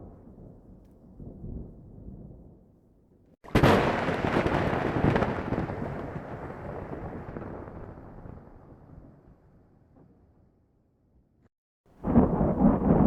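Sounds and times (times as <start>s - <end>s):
thunder rumble: 0.0s - 10.3s, 12.0s - 13.0s
thunderclap crack: 3.4s - 8.9s, 12.0s - 13.0s.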